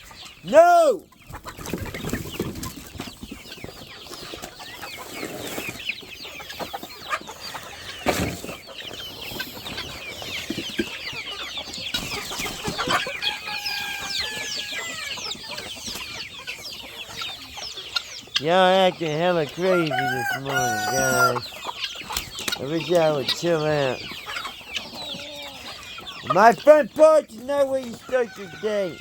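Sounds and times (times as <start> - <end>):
chickens clucking: 0.0 - 29.0
chicken long held call: 13.1 - 15.2, 19.8 - 21.4.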